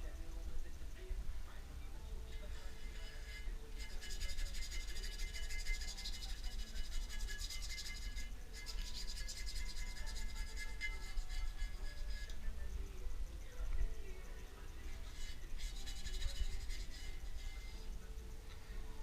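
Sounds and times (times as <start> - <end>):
rapid brush scrubbing: 2.3 - 12.4, 15.0 - 17.9.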